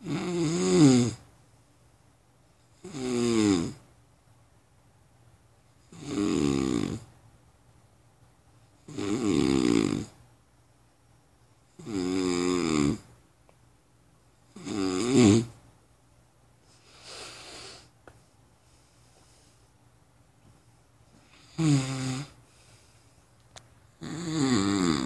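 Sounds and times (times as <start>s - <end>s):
person snoring: 0.0s - 1.2s, 2.8s - 3.8s, 5.9s - 7.0s, 8.9s - 10.2s, 11.8s - 13.0s, 14.6s - 15.5s, 21.4s - 22.4s, 24.0s - 25.0s.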